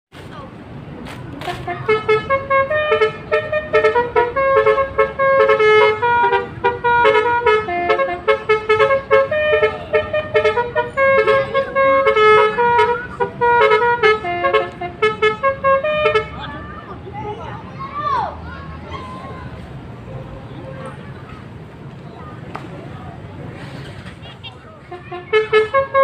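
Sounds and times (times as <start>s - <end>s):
multi-tone horn playing a tune: 1.4s - 16.5s, 24.9s - 26.0s.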